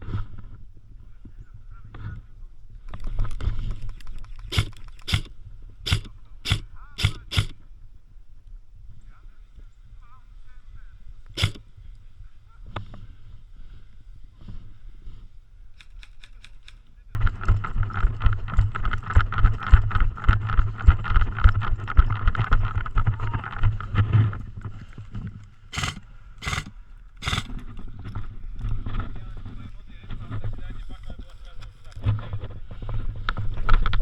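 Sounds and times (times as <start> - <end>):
airsoft rifle automatic fire: 3.1 - 5.3, 5.9 - 7.6, 11.4 - 11.6, 25.7 - 27.6.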